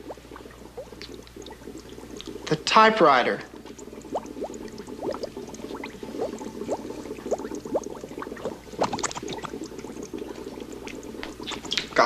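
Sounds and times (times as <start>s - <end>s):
liquid bubbling: 0.0s - 12.0s
steady low hum: 0.0s - 12.0s.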